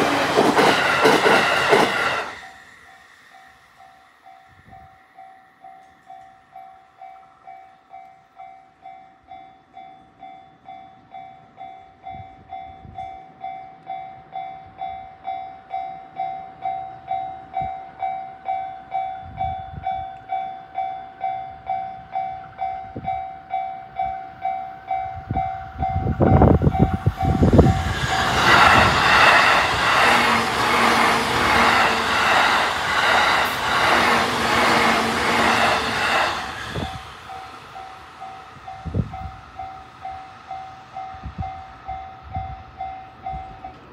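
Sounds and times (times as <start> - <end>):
train wheels clattering: 0.0 - 3.6, 26.2 - 42.1
railway crossing bell: 0.0 - 43.9.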